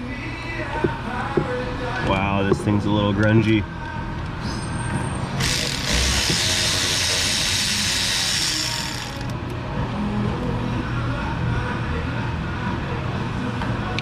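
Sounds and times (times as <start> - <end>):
air blow gun hissing: 5.4 - 9.3.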